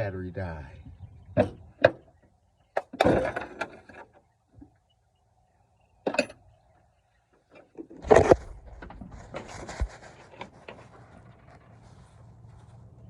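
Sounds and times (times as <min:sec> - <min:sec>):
clunk with a scrape: 0:07.8 - 0:12.7
light rattling and scuffing: 0:08.0 - 0:13.0.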